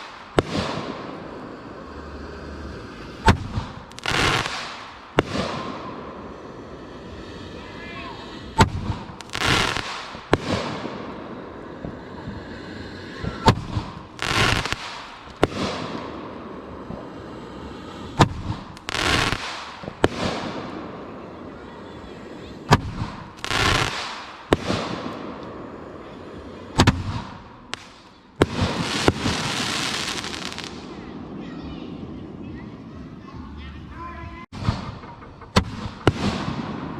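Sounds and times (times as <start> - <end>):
firework mortar launch thump: 3.2 - 5.9, 8.5 - 11.0, 13.2 - 16.2, 18.1 - 20.9, 22.6 - 25.6, 26.7 - 30.8, 34.5 - 36.9
firework shell bursting: 8.4 - 11.1, 11.8 - 16.1.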